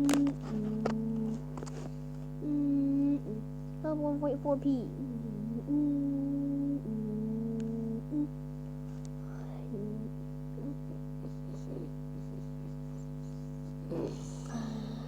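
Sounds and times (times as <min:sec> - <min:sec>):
low electronic hum: 0:00.0 - 0:15.0.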